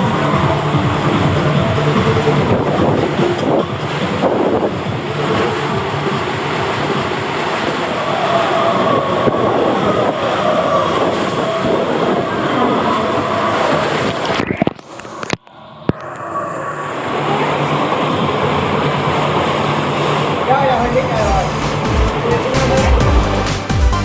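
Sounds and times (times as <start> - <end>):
rider sliding down water slide: 0.0 - 15.2.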